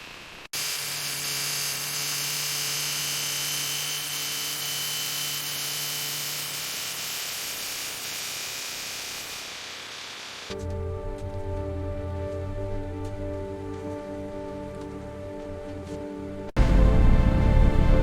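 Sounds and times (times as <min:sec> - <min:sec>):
low mechanical hum: 0:00.0 - 0:05.4.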